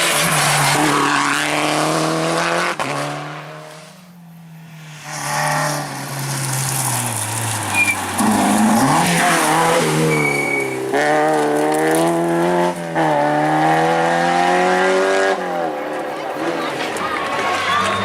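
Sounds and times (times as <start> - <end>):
car engine accelerating hard: 5.0 - 16.9
tyres squealing: 7.3 - 10.9.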